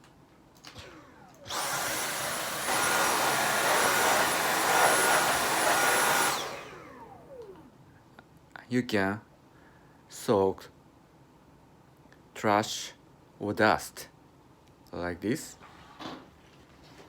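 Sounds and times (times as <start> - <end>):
cordless vacuum motor whine: 0.6 - 7.7.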